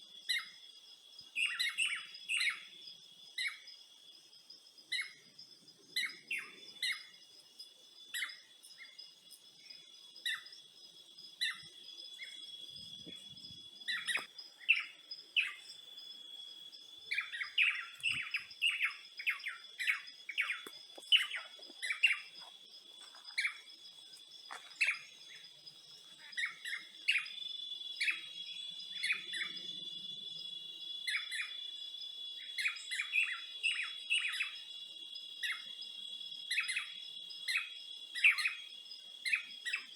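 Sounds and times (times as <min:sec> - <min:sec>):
insect drone: 0:00.0 - 0:39.9
birds chirping: 0:04.9 - 0:31.7.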